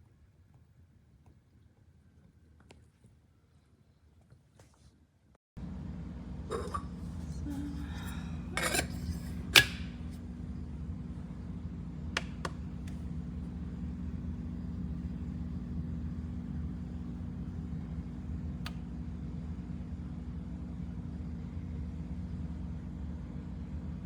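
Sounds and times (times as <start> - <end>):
dishes clinking: 6.5 - 9.8.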